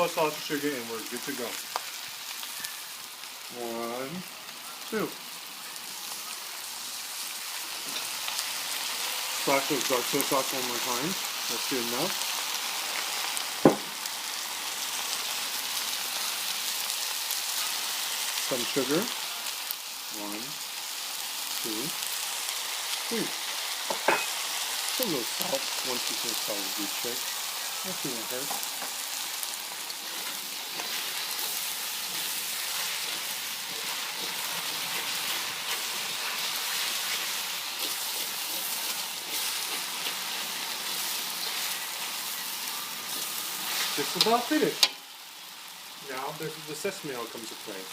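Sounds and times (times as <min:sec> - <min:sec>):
food sizzling in a wok: 0:00.0 - 0:47.9
sharp knock: 0:13.6 - 0:13.9.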